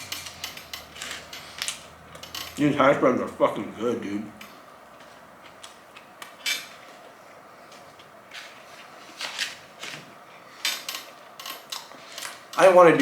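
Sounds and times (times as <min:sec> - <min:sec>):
utensils clicking and rustling: 0:00.0 - 0:02.8, 0:10.6 - 0:12.8.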